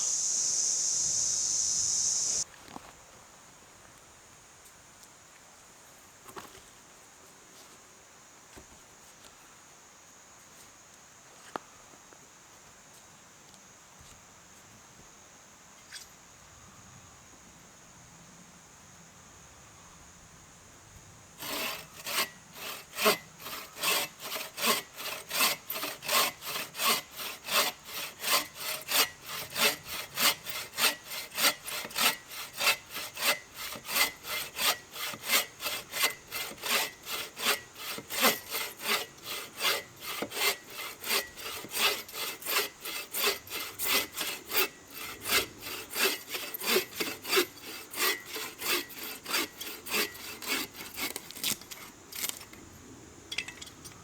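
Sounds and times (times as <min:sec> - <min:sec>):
hand saw cutting wood: 0:21.4 - 0:52.5.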